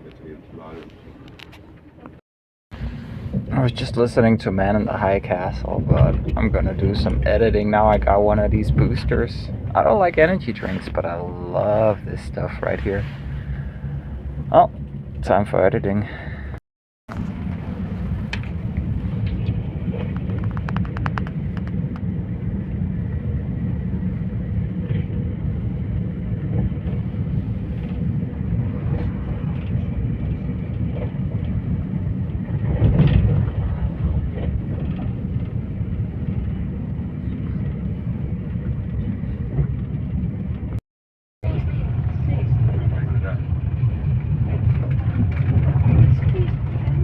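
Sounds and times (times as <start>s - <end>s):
low rumble of moving vehicle: 0.0s - 40.8s, 41.4s - 47.0s
faint clicks: 20.0s - 22.0s.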